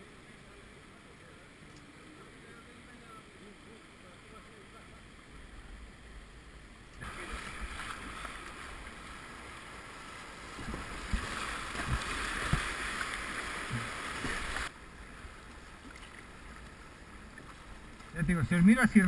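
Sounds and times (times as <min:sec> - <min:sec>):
rushing whitewater: 0:07.0 - 0:19.0
low thumps: 0:10.5 - 0:12.8.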